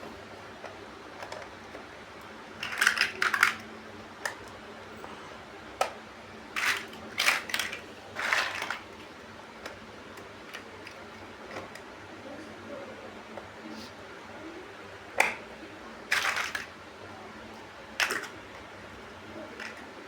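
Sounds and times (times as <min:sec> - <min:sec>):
plastic bricks clicking and clattering: 0:00.6 - 0:01.9, 0:02.6 - 0:04.6, 0:06.6 - 0:08.9, 0:16.1 - 0:16.7, 0:18.0 - 0:18.6, 0:19.4 - 0:19.9.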